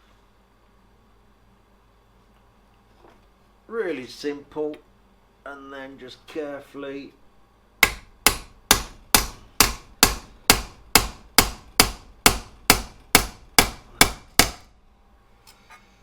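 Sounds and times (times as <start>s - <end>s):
hammer tapping metal jig: 7.8s - 14.7s.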